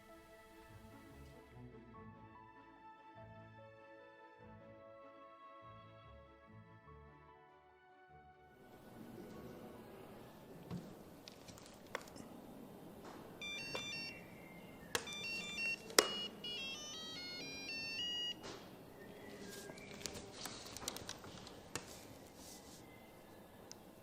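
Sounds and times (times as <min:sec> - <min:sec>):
electronic beep tune: 0:13.4 - 0:14.2, 0:14.9 - 0:18.4
sharp clicks: 0:14.9 - 0:16.3.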